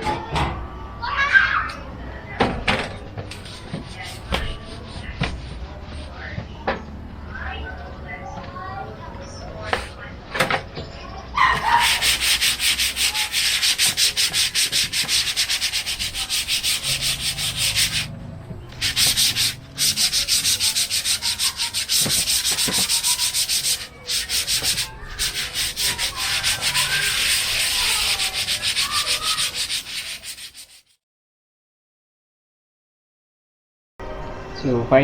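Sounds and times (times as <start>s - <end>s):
abrasive scrubbing sheet metal: 3.3s - 6.1s, 11.5s - 30.9s.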